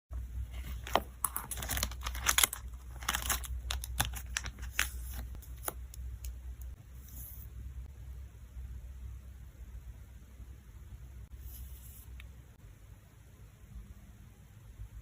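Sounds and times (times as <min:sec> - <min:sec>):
packing materials crinkling: 0:00.6 - 0:05.8.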